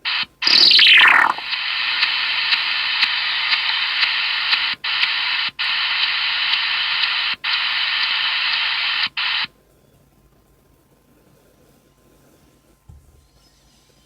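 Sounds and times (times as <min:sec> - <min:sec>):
radio static hiss: 0:00.0 - 0:09.5.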